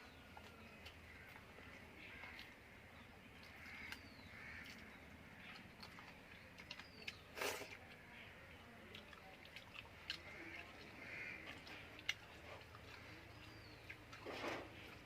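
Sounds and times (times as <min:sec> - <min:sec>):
faint bird calls: 0:10.1 - 0:15.0.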